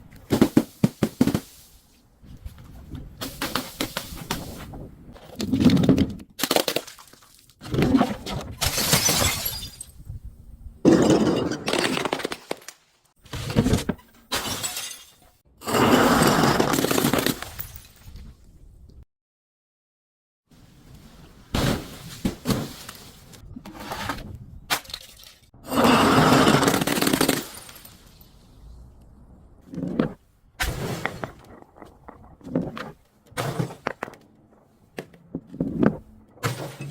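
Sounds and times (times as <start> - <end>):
glass bottle shattering: 8.6 - 10.0, 14.3 - 15.3, 24.8 - 25.5.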